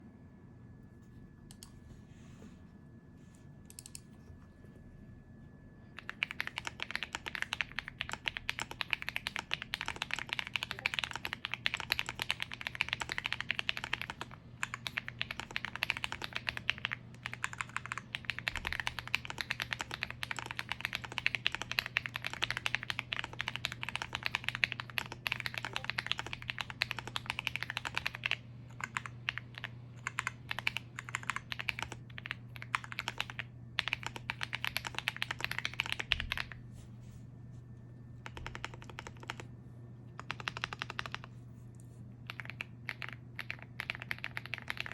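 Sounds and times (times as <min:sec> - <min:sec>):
mechanical keyboard typing: 0:06.0 - 0:36.6, 0:38.2 - 0:39.5, 0:40.2 - 0:41.4, 0:42.2 - 0:44.9.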